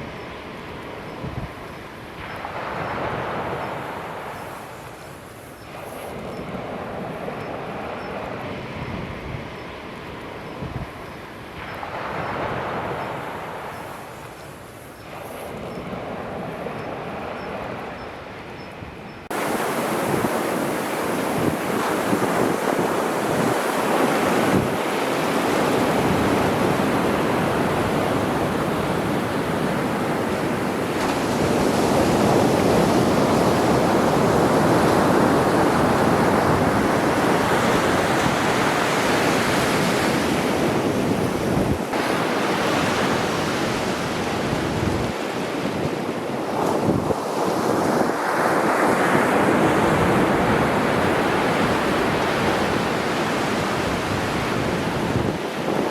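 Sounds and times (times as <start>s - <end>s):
wind buffeting microphone: 18.6s - 55.9s
sea waves breaking on shore: 19.2s - 55.9s.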